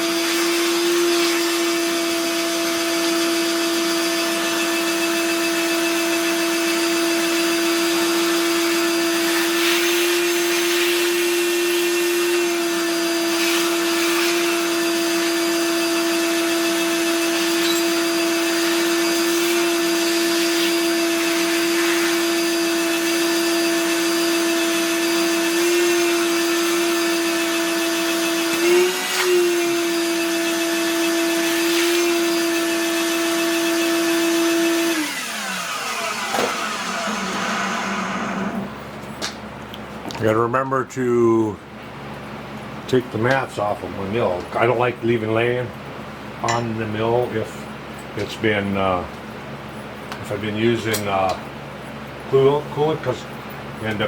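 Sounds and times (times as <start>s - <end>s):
vacuum cleaner running: 0.0s - 38.9s.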